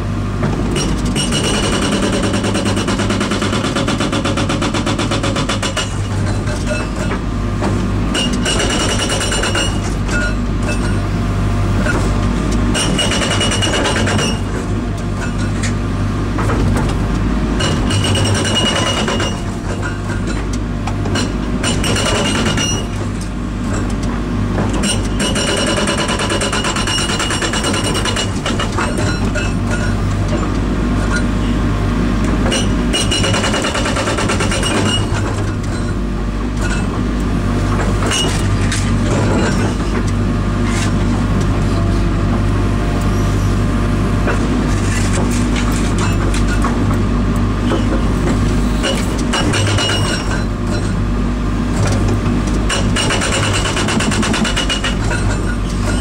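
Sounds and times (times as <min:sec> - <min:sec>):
hydraulic breaker hammering: 0:00.5 - 0:11.0, 0:11.8 - 0:14.7, 0:17.6 - 0:23.2, 0:24.6 - 0:31.4, 0:32.3 - 0:37.1, 0:47.6 - 0:51.0, 0:51.8 - 0:56.0.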